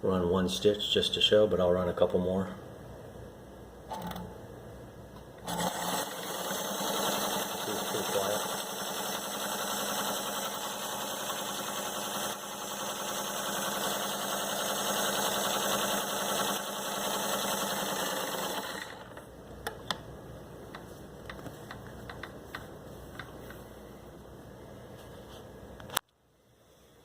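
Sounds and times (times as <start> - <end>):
sewing machine stitching: 5.4 - 19.2.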